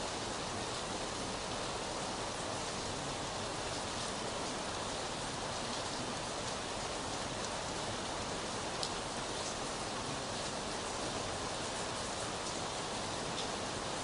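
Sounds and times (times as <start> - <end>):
steady rain hiss: 0.0 - 14.0
rain drop ticks: 8.8 - 9.6.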